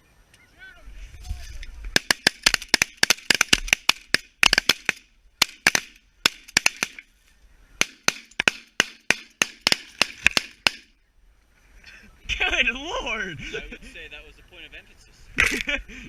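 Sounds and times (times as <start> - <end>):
shotgun fire: 7.8 - 10.9.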